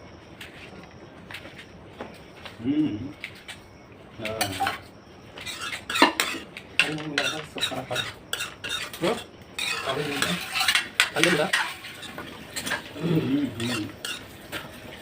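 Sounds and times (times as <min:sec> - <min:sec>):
cutlery clinking against dishes: 0:05.4 - 0:12.9, 0:13.5 - 0:14.3.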